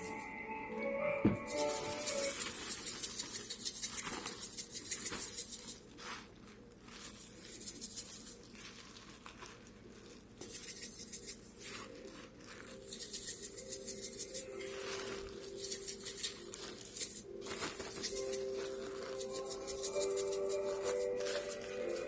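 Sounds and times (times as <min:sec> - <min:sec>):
herbs rattling out of spice jar: 0:01.5 - 0:05.8, 0:12.6 - 0:22.0
plastic bag crinkling: 0:01.5 - 0:10.7, 0:11.4 - 0:22.0.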